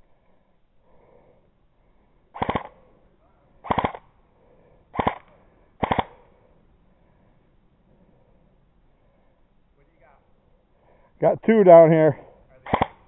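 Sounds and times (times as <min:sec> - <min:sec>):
airsoft gun firing bursts: 0:02.4 - 0:02.9, 0:03.6 - 0:04.1, 0:04.9 - 0:06.3, 0:12.6 - 0:13.0.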